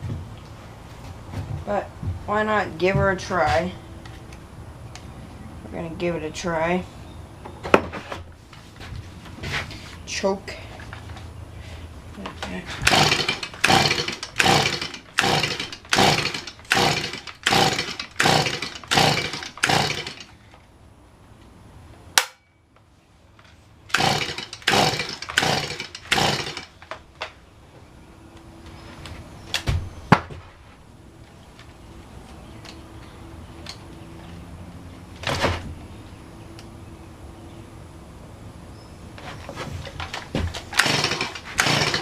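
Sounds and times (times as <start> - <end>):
engine turning over: 12.8 - 20.3, 23.9 - 26.8, 40.7 - 42.0
chainsaw recoil starter yanks: 12.8 - 20.4, 23.9 - 26.8, 40.7 - 42.0.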